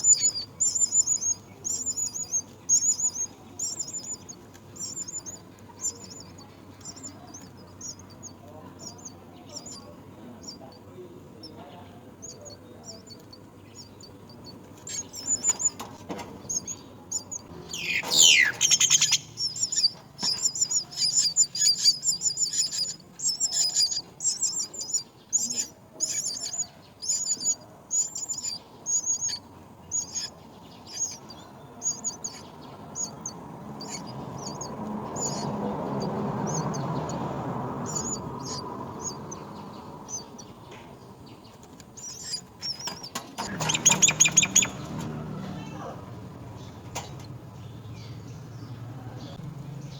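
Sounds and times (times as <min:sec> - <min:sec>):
young birds cheeping: 0:00.0 - 0:49.9
loud falling bird call: 0:17.7 - 0:21.4.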